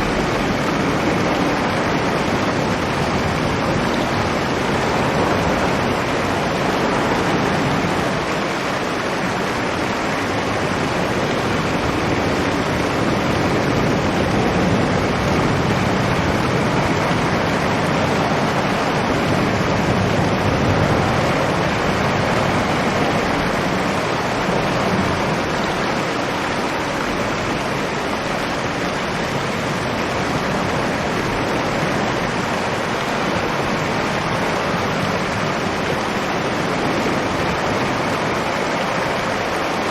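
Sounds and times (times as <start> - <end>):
storm wind roaring: 0.0 - 39.9.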